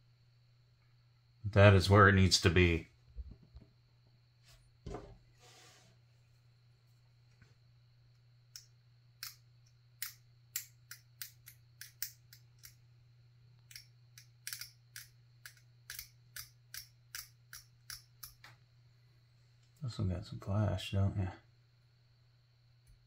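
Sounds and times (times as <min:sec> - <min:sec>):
small sharp plastic clicks: 0:08.5 - 0:12.8, 0:13.6 - 0:18.6.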